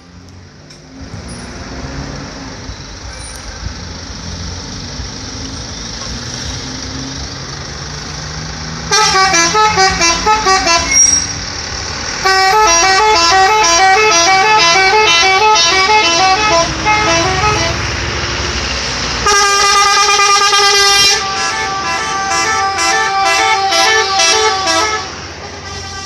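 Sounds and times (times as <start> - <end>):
multi-tone musical bus horn: 8.9 - 11.3, 12.2 - 17.9, 19.2 - 26.0.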